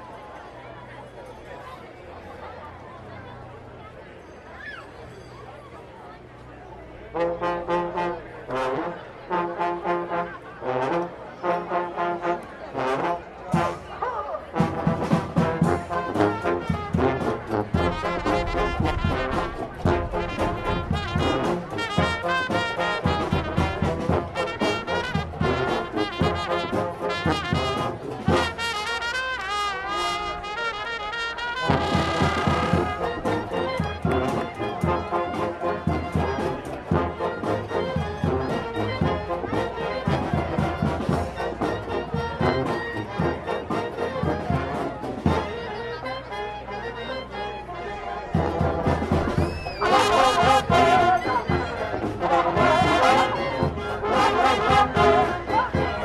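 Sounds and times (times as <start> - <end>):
brass marching band: 6.9 - 56.0
steady drum beat: 14.6 - 28.7, 31.6 - 37.6.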